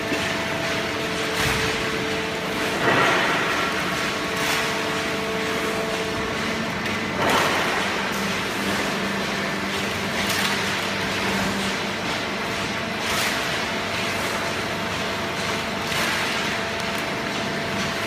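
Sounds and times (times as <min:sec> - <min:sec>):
machine hum: 0:00.0 - 0:18.0.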